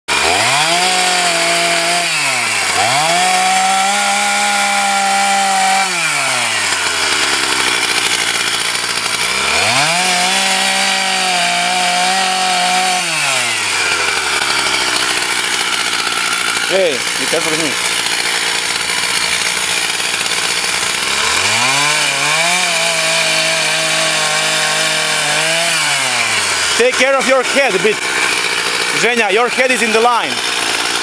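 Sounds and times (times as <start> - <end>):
chainsaw revving: 0.1 - 31.0.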